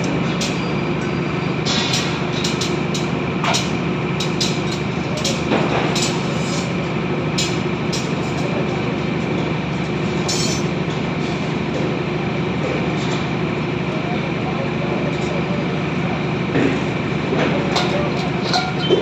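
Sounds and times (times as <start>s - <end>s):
construction machinery drone: 0.0s - 19.0s
metallic clanks and knocks: 17.4s - 19.0s.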